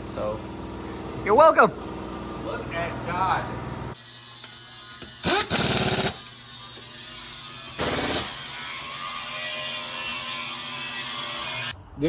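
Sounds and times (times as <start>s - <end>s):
pneumatic impact wrench rattling: 4.3s - 8.6s.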